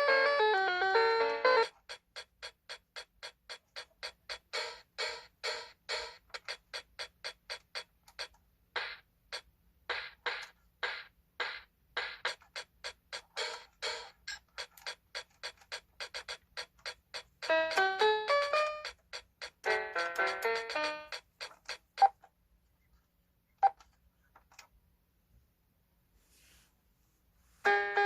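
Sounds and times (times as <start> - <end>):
keyboard short clipped sounds: 12.3 - 22.3.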